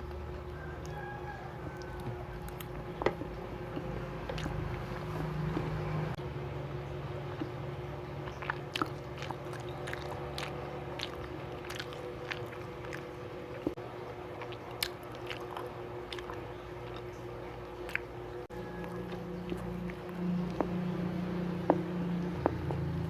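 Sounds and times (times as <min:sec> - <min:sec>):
person chewing food: 0:00.0 - 0:06.1, 0:08.2 - 0:23.0
faint steady hum: 0:00.0 - 0:23.0.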